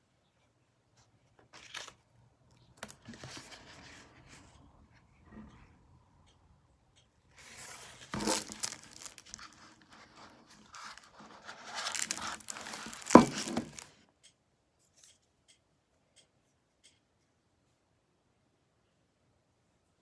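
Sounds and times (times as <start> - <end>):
packaging crinkling and tearing: 7.4 - 14.0.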